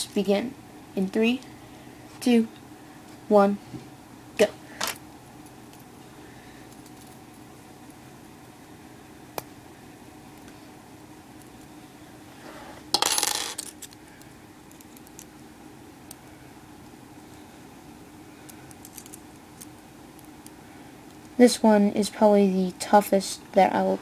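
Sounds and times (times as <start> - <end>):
metal puzzle pieces clinking: 18.7 - 19.7.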